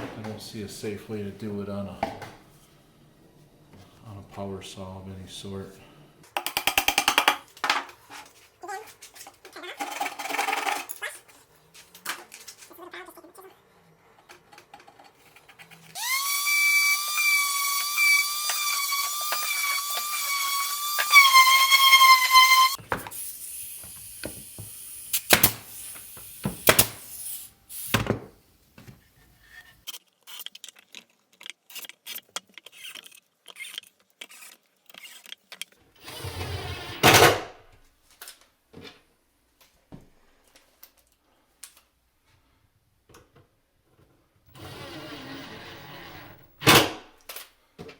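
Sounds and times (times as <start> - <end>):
power drill whining: 15.9 - 27.2, 36.0 - 37.0, 44.5 - 46.5.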